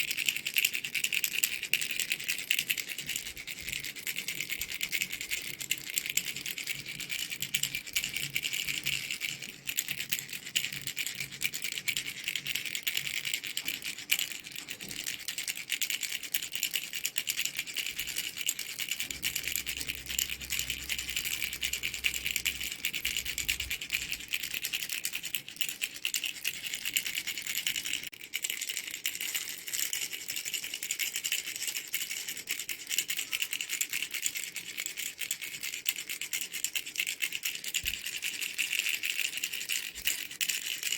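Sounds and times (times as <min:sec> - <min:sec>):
baby rattle shaken: 0:00.0 - 0:40.9.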